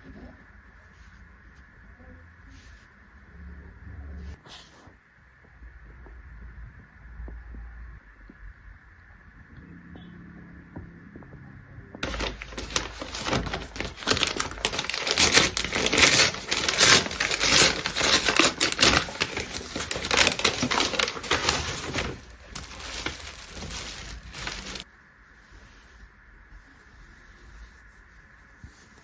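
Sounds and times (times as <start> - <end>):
crinkling handling noise: 12.0 - 24.9.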